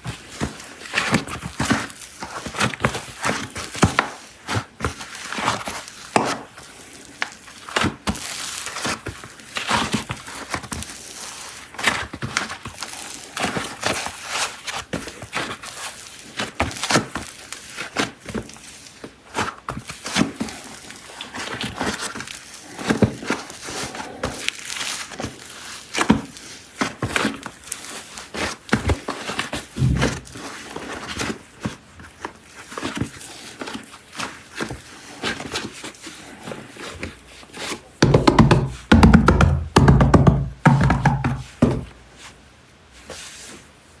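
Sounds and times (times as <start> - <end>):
wrappers crinkling and tearing: 0.1 - 38.0
soft thunk: 29.8 - 30.4.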